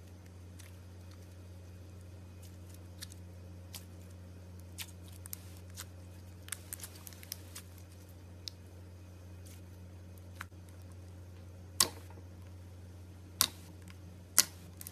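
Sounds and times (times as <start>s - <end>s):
steady low hum: 0.0s - 14.9s.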